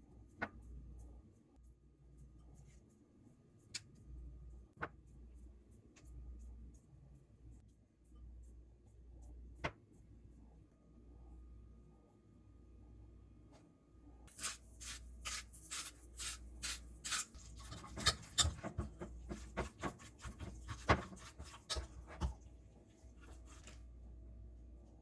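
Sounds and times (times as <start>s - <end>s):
food scraping and rustling: 14.3s - 22.4s.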